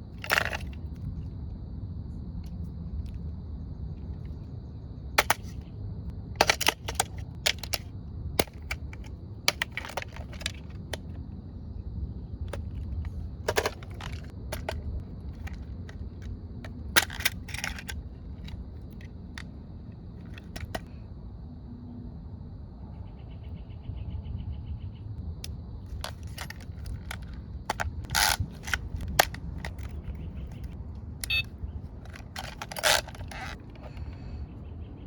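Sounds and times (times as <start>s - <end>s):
toy digger clicks and clatter: 0.0s - 1.0s, 5.2s - 5.6s, 6.4s - 11.2s, 12.5s - 19.6s, 20.2s - 20.9s, 25.9s - 34.2s.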